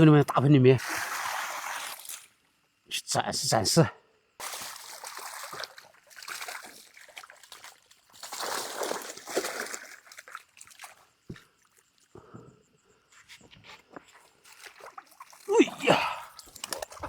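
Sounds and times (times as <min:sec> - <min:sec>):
fish thrashing in water: 0:04.4 - 0:11.1, 0:14.5 - 0:17.0.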